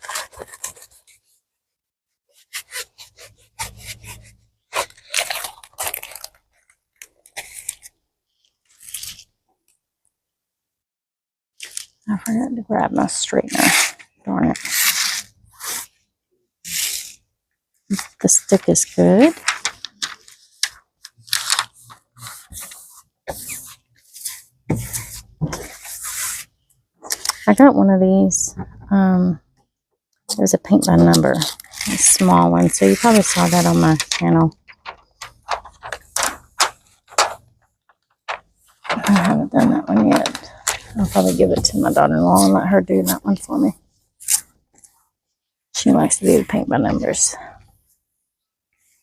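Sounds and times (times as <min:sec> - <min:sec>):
crinkly packaging rustling: 0:00.0 - 0:01.3, 0:04.7 - 0:09.3, 0:18.0 - 0:23.1, 0:30.8 - 0:43.4.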